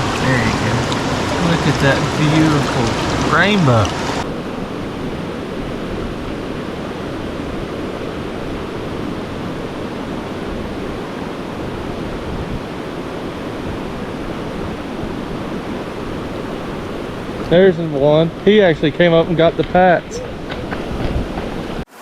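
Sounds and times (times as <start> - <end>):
stream water flowing: 0.0 - 4.3.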